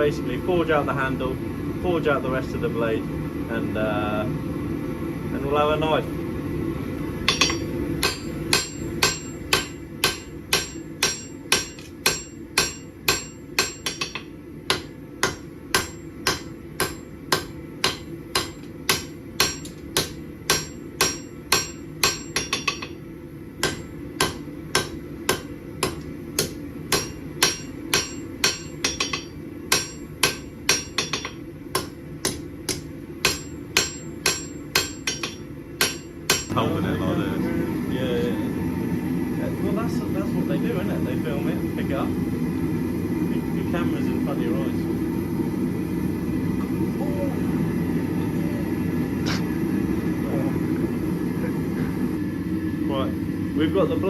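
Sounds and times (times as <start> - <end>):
steady low hum: 0.0 - 54.0
hammer striking steel on anvil: 7.2 - 23.0, 23.6 - 36.6.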